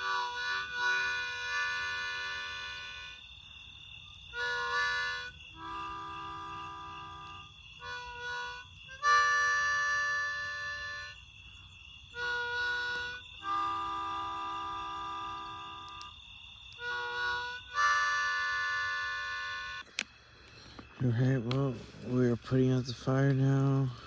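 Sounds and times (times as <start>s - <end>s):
harmonica chords: 0.0s - 3.3s, 4.3s - 11.3s, 12.1s - 16.1s, 16.7s - 20.1s.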